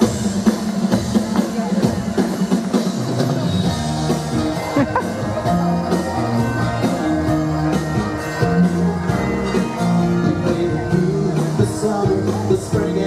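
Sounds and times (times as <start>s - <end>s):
drums: 0.0s - 13.0s
guitar: 0.0s - 13.0s
upbeat christmas song: 3.4s - 13.0s.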